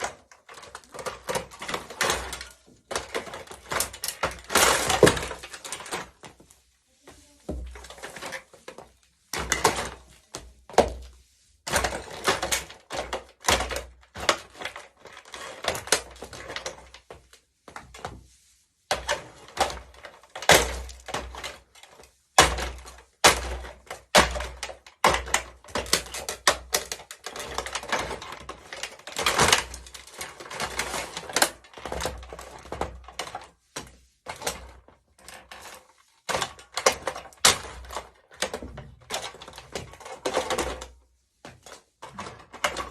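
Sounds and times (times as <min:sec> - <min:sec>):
plastic toy car being crushed: 0:00.0 - 0:06.2, 0:11.7 - 0:17.0, 0:18.9 - 0:33.5, 0:34.3 - 0:40.9.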